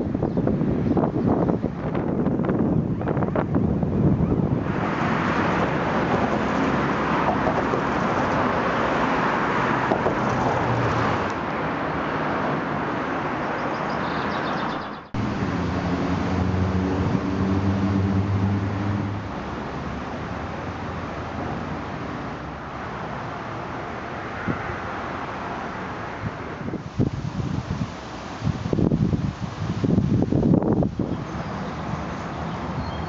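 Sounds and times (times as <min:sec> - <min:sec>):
wind noise: 0:00.0 - 0:22.2, 0:26.1 - 0:33.0
road traffic: 0:00.0 - 0:33.0
low vehicle engine hum: 0:15.1 - 0:22.7.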